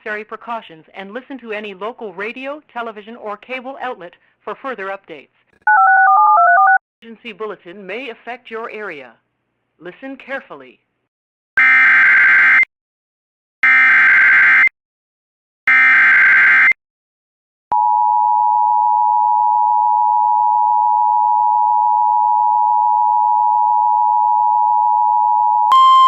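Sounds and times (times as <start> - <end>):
two-tone attention signal: 25.6 - 26.0.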